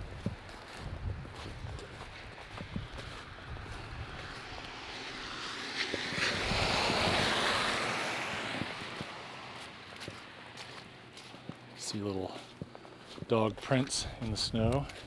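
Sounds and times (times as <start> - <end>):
faint footsteps: 0.0 - 15.0
car driving past: 2.4 - 11.1.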